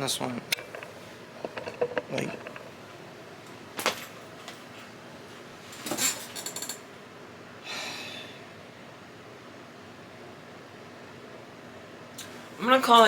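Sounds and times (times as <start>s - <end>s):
breathy exhale: 7.6s - 8.6s.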